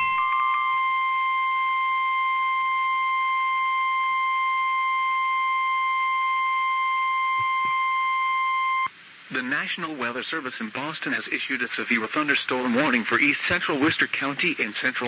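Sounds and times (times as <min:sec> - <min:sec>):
steady alarm tone: 0:00.0 - 0:08.9.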